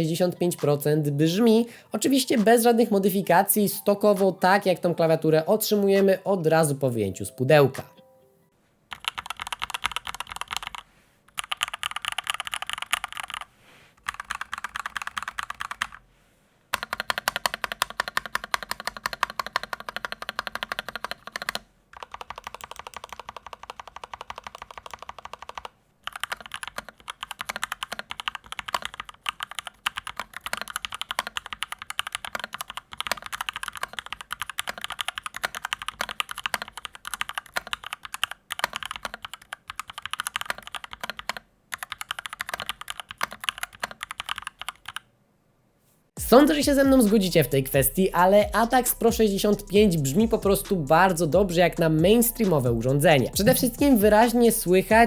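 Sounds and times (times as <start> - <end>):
mechanical keyboard typing: 8.9 - 16.0, 16.7 - 45.1.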